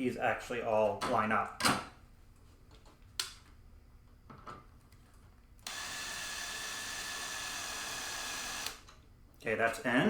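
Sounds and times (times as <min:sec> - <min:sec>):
power drill driving a screw: 0:05.6 - 0:08.9.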